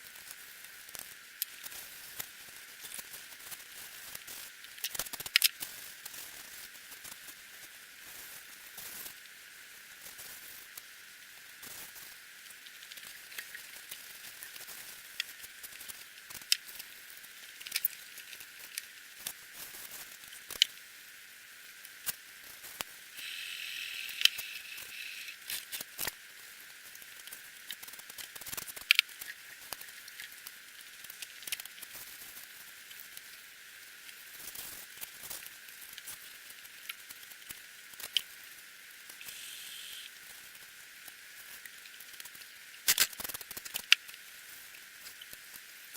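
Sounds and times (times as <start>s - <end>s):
brief hiss: 23.2s - 25.4s, 39.2s - 40.1s.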